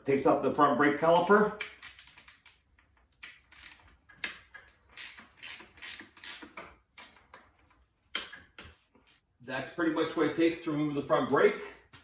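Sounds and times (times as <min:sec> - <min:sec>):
ratchet wrench clicking: 0:01.6 - 0:06.6.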